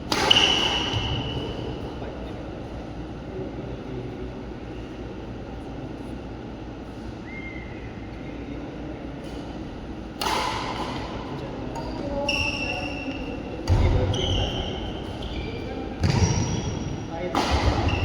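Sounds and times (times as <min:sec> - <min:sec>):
court shoes squeaking: 0:00.0 - 0:01.8, 0:11.7 - 0:18.0
racket striking shuttlecock: 0:00.1 - 0:01.1, 0:10.2 - 0:11.2.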